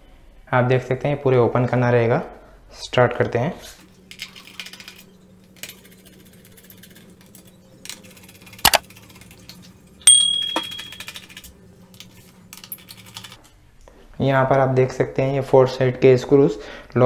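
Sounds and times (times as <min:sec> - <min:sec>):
screw dropping with a clink: 0:10.1 - 0:11.1.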